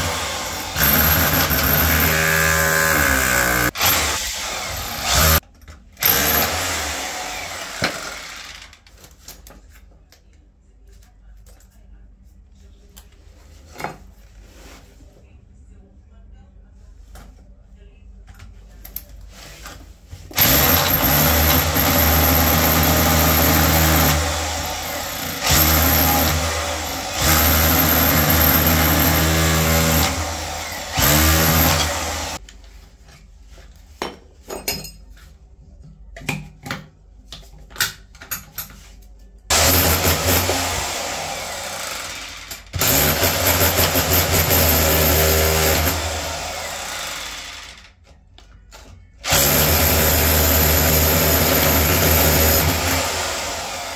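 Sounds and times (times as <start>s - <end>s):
electric power tool motor: 0.0s - 5.4s, 20.4s - 32.4s.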